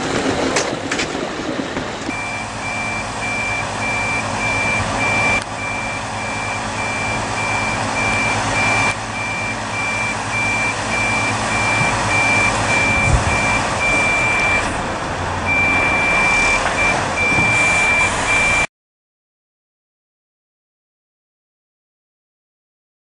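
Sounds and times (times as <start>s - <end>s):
excavator engine and air rush: 0.0s - 18.7s
electronic warning beeper: 2.1s - 14.8s, 15.5s - 18.7s.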